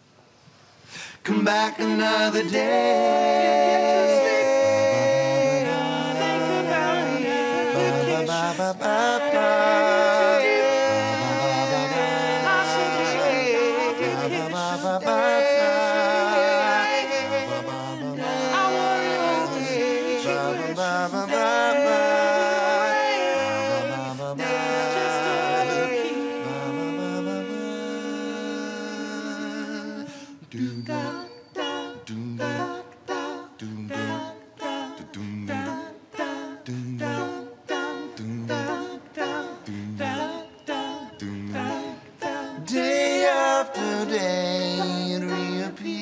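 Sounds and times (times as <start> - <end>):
voices singing in harmony: 1.0 - 46.0.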